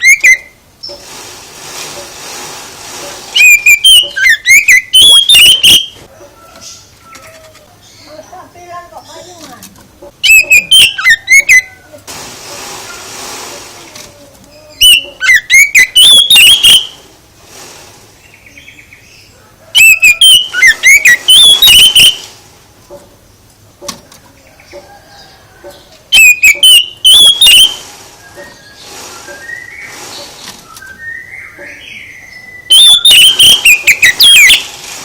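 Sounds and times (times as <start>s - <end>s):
songbird singing: 3.3s - 11.8s, 14.1s - 17.1s, 18.2s - 22.3s, 22.9s - 34.8s.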